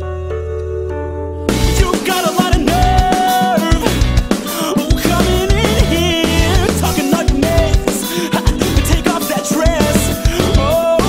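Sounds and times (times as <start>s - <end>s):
bass notes: 1.5s - 2.0s, 2.7s - 3.2s, 3.8s - 4.3s, 5.1s - 7.8s, 8.6s - 9.0s, 9.8s - 11.0s
drum kit beat: 1.5s - 11.0s.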